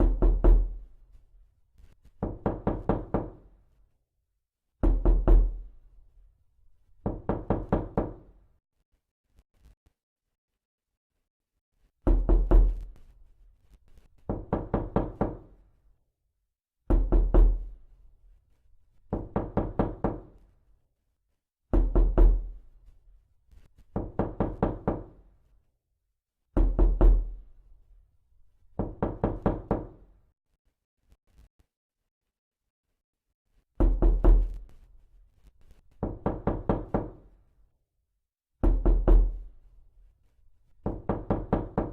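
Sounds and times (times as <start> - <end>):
knuckles knocking on wooden door: 0.0 - 0.8, 2.2 - 3.5, 4.8 - 5.7, 7.0 - 8.4, 12.1 - 12.8, 14.3 - 15.5, 16.9 - 17.7, 19.1 - 20.4, 21.8 - 22.5, 24.0 - 25.1, 26.6 - 27.4, 28.8 - 30.0, 33.8 - 34.6, 36.0 - 37.2, 38.6 - 39.5, 40.8 - 41.9.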